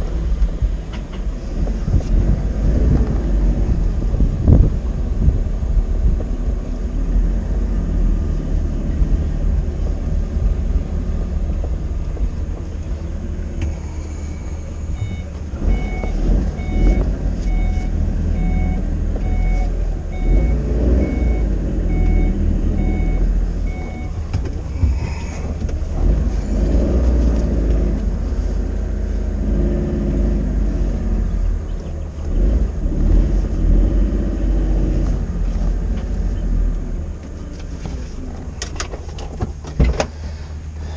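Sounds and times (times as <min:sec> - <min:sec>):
work vehicle engine running: 0:00.0 - 0:40.9
reversing beeper beeping: 0:14.2 - 0:24.2.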